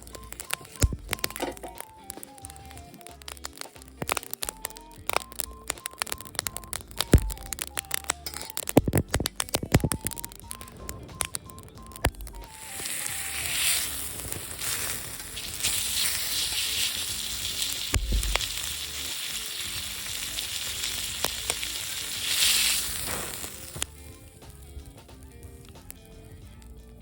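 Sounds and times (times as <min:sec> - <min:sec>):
food sizzling in a pan: 0:00.0 - 0:10.2, 0:12.3 - 0:26.2
sharp pops: 0:00.0 - 0:24.6
soft background music: 0:00.0 - 0:27.0
low thump: 0:18.0 - 0:18.4.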